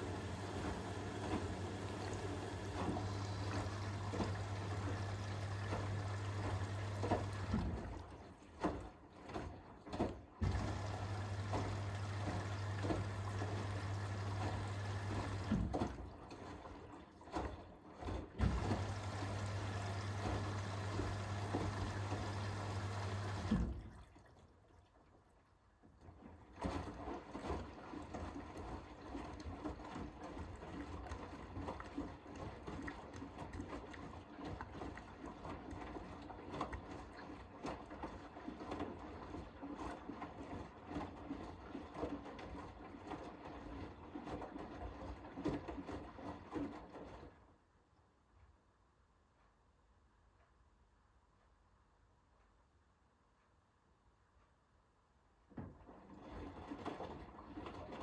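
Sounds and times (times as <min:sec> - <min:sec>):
washing machine motor hum: 0:00.0 - 0:08.5, 0:10.4 - 0:17.0, 0:18.2 - 0:23.9
water sloshing in drum: 0:00.0 - 0:25.2, 0:26.0 - 0:47.4, 0:55.5 - 0:58.0.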